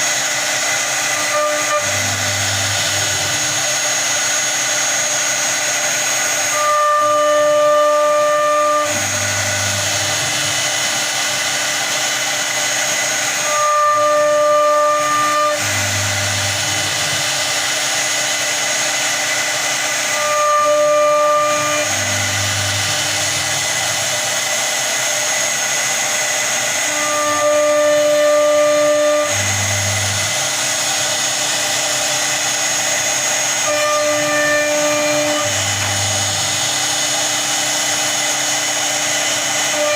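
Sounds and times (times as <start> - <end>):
router spindle whine: 0.0 - 39.9.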